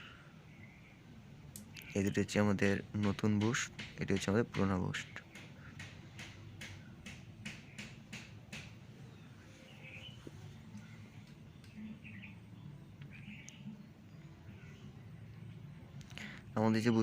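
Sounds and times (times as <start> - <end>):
faint bird chirps: 0.0 - 2.2, 9.0 - 17.0
low steady hum: 0.0 - 17.0.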